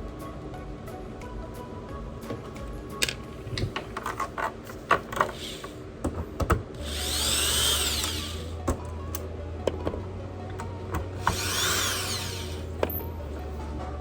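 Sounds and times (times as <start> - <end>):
small electric screwdriver motor: 6.8 - 8.6, 11.2 - 12.7.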